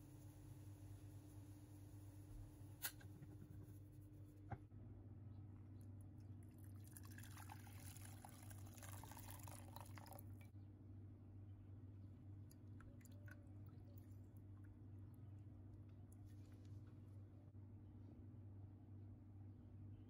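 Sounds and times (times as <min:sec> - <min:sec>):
faint trickle of liquid: 0:05.6 - 0:10.5, 0:12.4 - 0:17.2.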